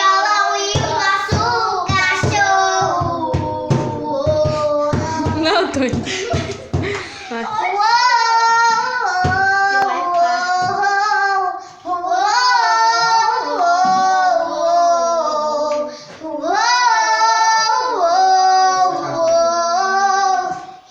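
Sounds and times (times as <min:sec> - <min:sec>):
girls singing unaccompanied: 0:00.0 - 0:20.9.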